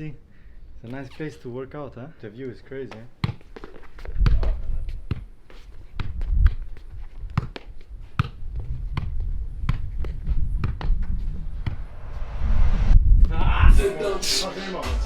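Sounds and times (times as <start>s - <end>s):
footsteps and light thuds: 2.8s - 11.9s
low rumble: 10.4s - 14.0s.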